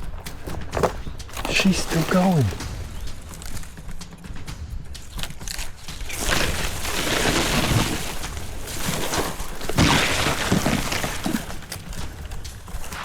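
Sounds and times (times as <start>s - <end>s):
animal crashing through dry brush: 0.0s - 13.0s.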